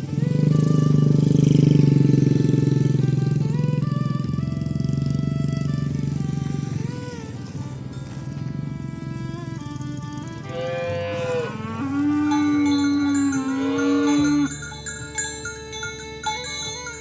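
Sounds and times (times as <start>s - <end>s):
chime-like tones ringing: 6.9s - 17.0s
cow mooing: 10.4s - 14.7s.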